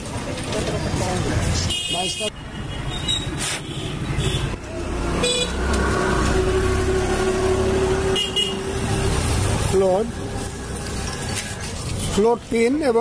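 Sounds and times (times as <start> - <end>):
vehicle horn: 1.7 - 9.4
vehicle passing rumble: 3.9 - 12.6.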